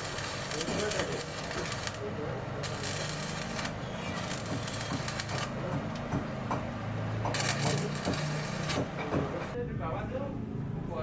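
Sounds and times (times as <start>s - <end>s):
irregular knocks: 5.7s - 7.4s.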